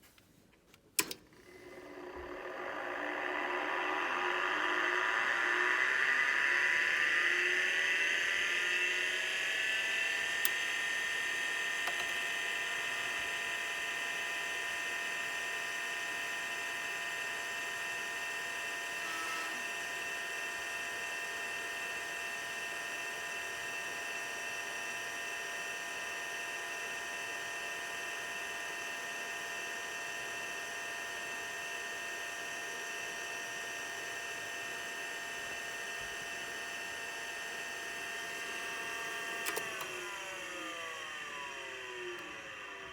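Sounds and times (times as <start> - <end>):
hard drive spinning up whine: 1.5 - 22.8, 34.6 - 42.9.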